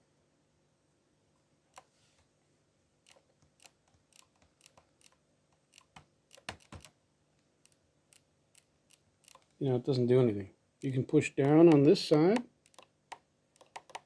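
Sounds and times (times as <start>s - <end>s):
laptop touchpad clicks and taps: 5.8s - 7.0s, 11.4s - 14.0s.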